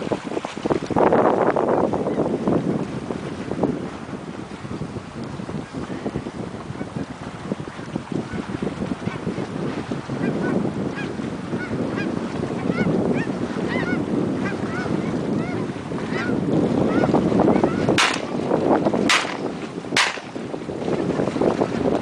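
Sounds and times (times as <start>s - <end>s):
wind rumble on microphone: 0.0s - 22.0s
sharp cracks: 18.0s - 20.5s.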